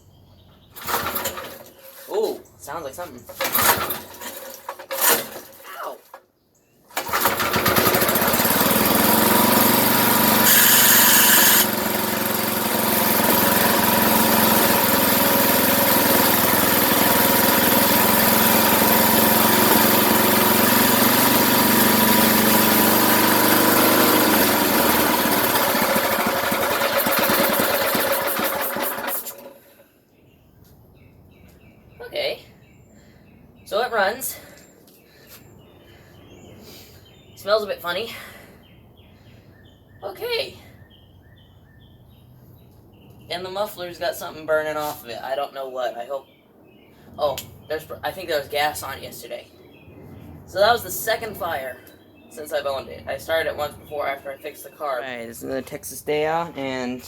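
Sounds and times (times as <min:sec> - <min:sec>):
small engine running: 0:00.8 - 0:01.8, 0:03.4 - 0:05.6, 0:07.0 - 0:29.8.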